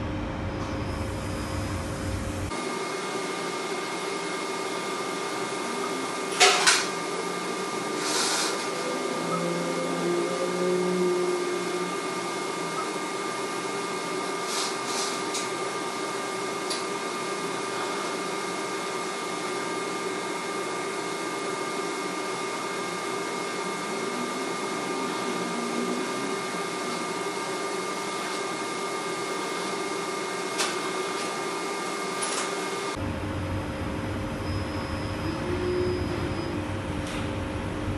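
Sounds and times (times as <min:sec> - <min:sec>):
low humming machine: 0:00.0 - 0:37.9
welding machine hissing: 0:01.5 - 0:09.2, 0:11.2 - 0:33.0.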